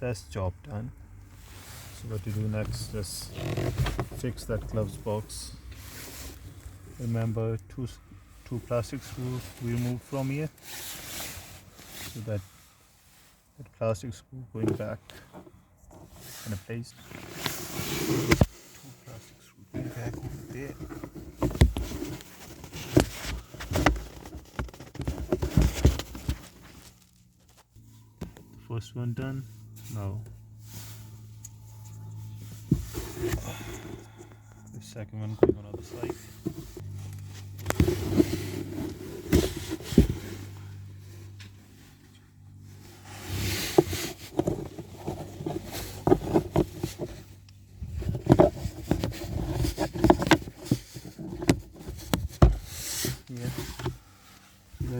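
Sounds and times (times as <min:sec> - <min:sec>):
rustling handling noise: 0:14.6 - 0:54.9.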